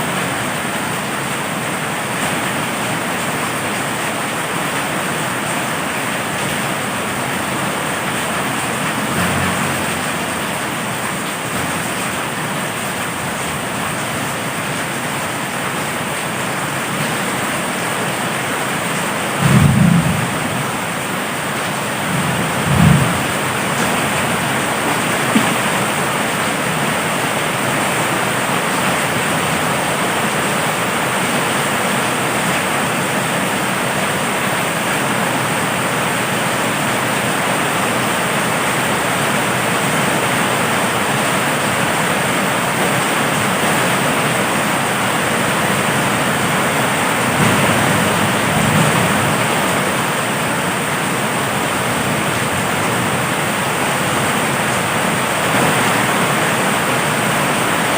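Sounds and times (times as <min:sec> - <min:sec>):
heavy rain: 0:00.0 - 0:57.9
faint low thunder rumbles: 0:06.6 - 0:12.1, 0:19.2 - 0:26.1, 0:47.3 - 0:50.2.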